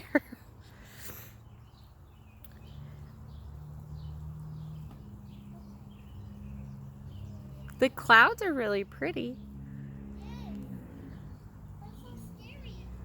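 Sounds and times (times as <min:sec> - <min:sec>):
faint birds chirping: 0:00.0 - 0:13.0.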